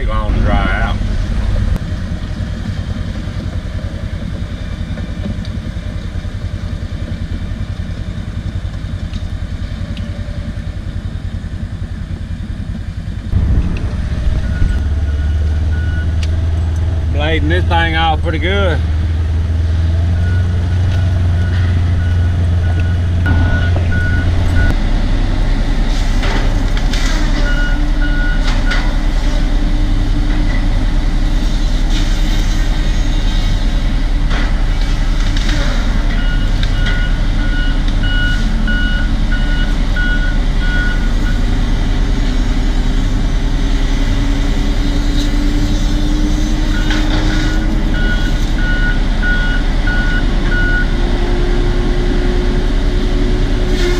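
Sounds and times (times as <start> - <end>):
bulldozer diesel engine running: 0.0 - 53.9
backup alarm beeping: 14.4 - 16.2, 20.2 - 24.8.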